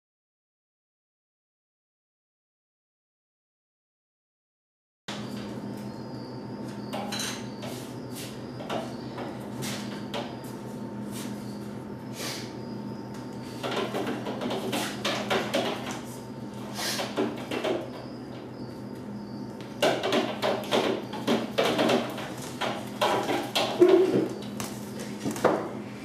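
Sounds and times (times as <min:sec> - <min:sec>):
steady low hum: 0:05.1 - 0:26.0
scattered clicks and knocks: 0:13.6 - 0:16.0, 0:17.0 - 0:18.4, 0:19.6 - 0:24.7.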